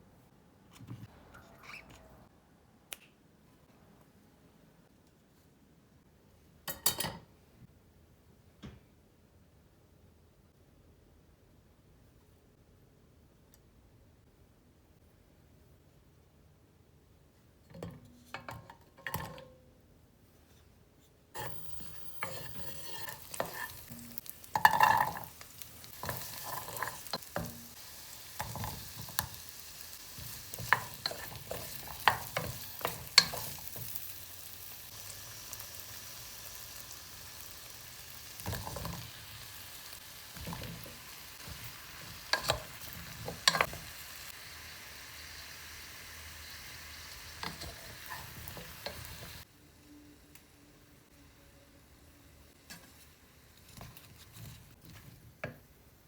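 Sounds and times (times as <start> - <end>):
utensil scraping a pot: 21.4 - 27.8
vegetables sizzling in a pot: 21.4 - 55.2.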